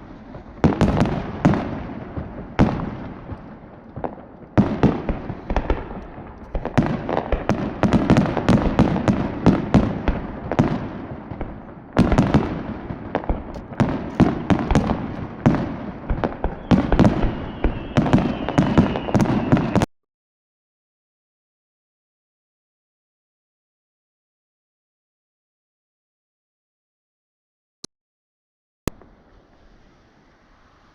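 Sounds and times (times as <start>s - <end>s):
fireworks bursting: 0.0s - 19.9s, 28.9s - 30.9s
firework whistle: 13.8s - 19.9s, 28.9s - 30.9s.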